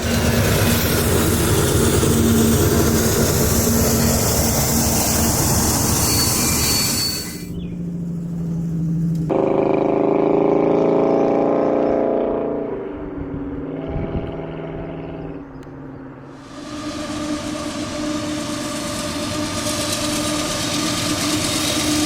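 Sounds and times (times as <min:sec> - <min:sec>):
freight train rushing past: 0:00.0 - 0:09.8, 0:16.0 - 0:22.0
locomotive pitched drone: 0:00.0 - 0:22.0.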